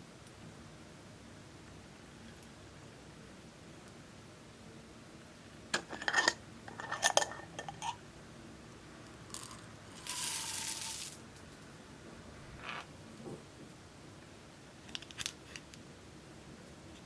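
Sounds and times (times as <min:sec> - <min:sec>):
short hissing rustle: 0:10.0 - 0:11.2.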